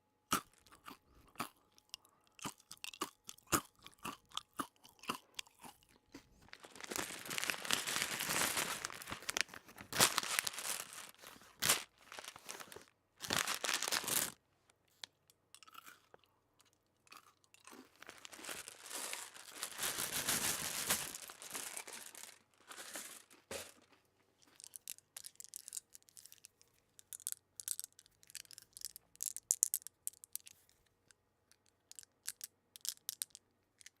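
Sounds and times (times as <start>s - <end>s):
crunchy food chewing: 0.3s - 7.9s, 15.6s - 18.8s.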